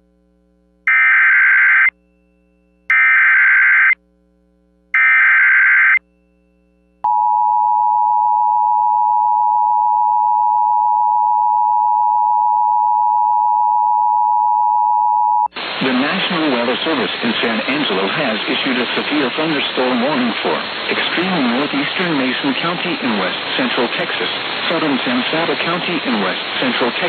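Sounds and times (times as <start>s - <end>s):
shrill two-tone alert signal: 0.9s - 2.0s, 2.9s - 4.0s, 5.0s - 6.0s
screechy digital data tones: 2.9s - 4.0s, 5.0s - 6.0s.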